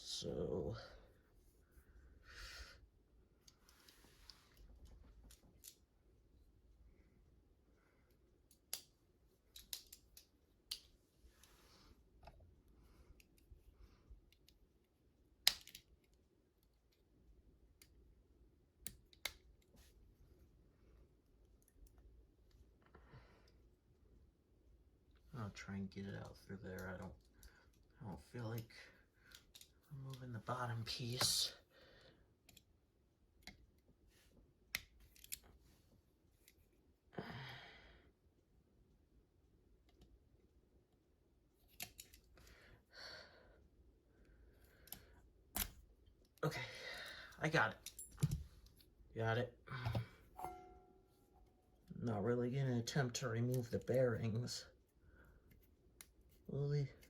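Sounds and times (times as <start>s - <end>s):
light clicks of wires: 8.5s - 11.0s, 15.4s - 17.0s, 18.8s - 19.8s.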